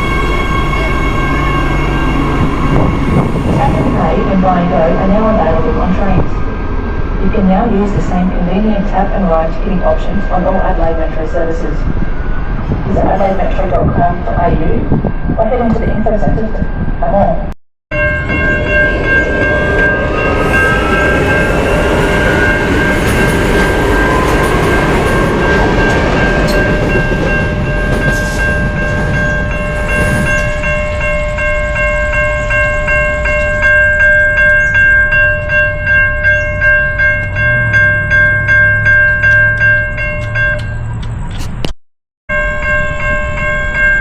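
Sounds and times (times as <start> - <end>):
train horn: 0.0 - 4.2
train rumble: 0.0 - 44.0
wheels clattering on rail joints: 18.0 - 41.7.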